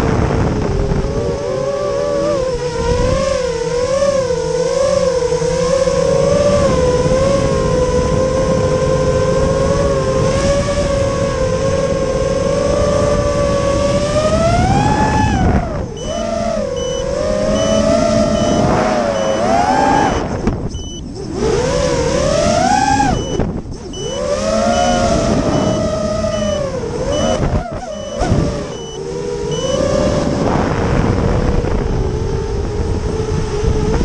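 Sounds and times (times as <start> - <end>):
quadcopter motors whining: 0.0 - 34.0
faint high beep: 16.0 - 21.1, 23.1 - 29.8.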